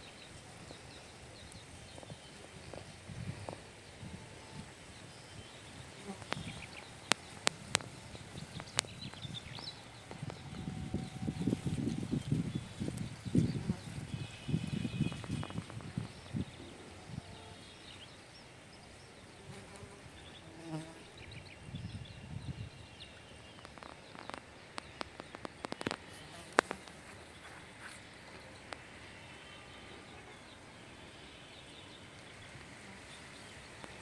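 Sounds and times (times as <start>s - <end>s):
insects buzzing and trilling: 0.0s - 34.0s
sharp clicks: 23.6s - 27.0s.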